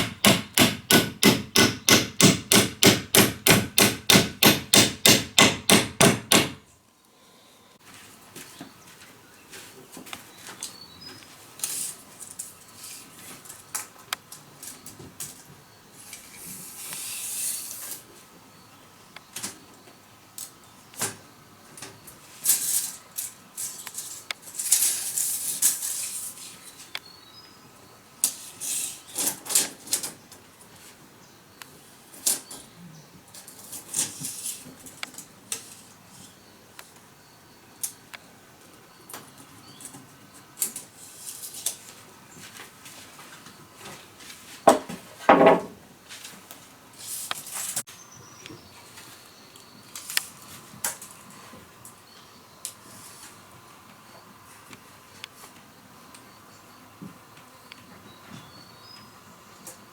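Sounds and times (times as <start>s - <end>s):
tools tapping and knocking wood: 0.0s - 6.6s, 44.7s - 45.8s.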